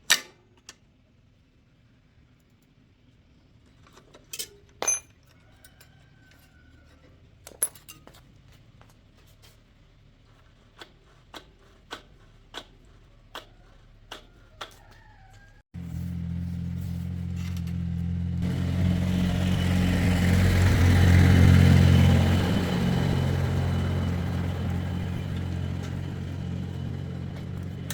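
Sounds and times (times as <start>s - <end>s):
metal parts clinking: 4.2s - 5.8s, 7.5s - 8.2s.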